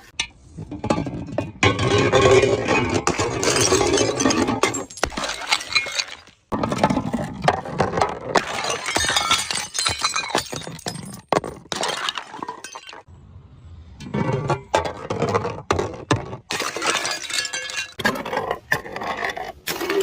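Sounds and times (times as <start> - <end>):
glass bottles shattering: 1.0 - 13.1, 16.5 - 18.1
glass shards clinking: 3.1 - 6.4, 16.5 - 18.0.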